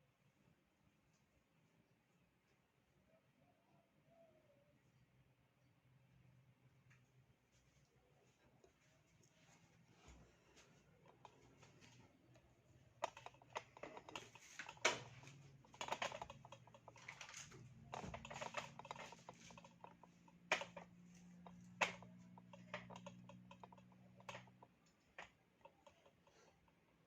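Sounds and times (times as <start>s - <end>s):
faint steady hum: 0.0s - 27.0s
irregular clicking and tapping: 10.1s - 27.0s.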